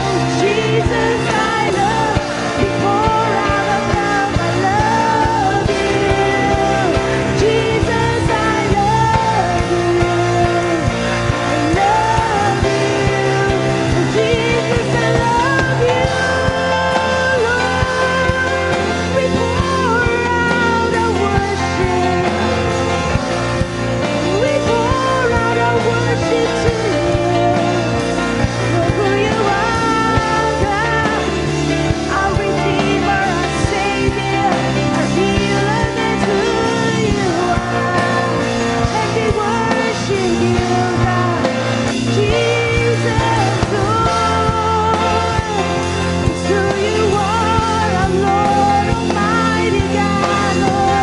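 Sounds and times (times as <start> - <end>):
band playing slow song: 0.0 - 51.0
person singing: 0.0 - 51.0.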